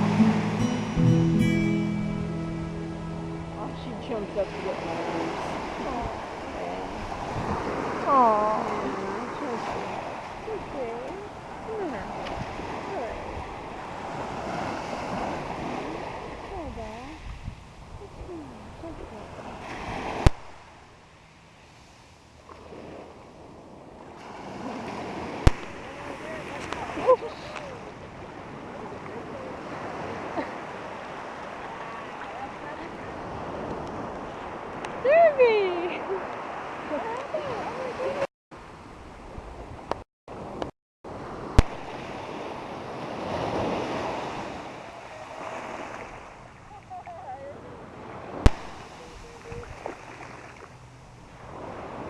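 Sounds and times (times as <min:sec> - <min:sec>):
ocean surf: 0:00.0 - 0:52.0
wind noise on microphone: 0:03.8 - 0:20.8, 0:32.9 - 0:46.8, 0:47.4 - 0:52.0.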